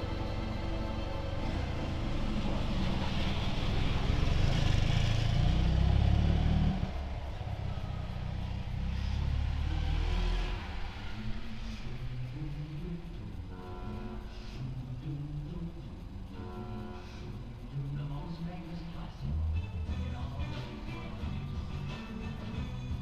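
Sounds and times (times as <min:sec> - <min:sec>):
motorcycle engine revving: 0:01.4 - 0:11.8.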